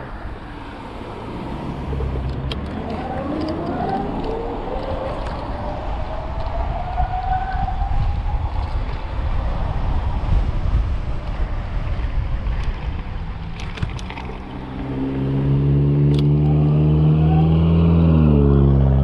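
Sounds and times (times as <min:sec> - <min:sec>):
low motor hum: 0:00.0 - 0:07.2
wind buffeting microphone: 0:00.0 - 0:16.1.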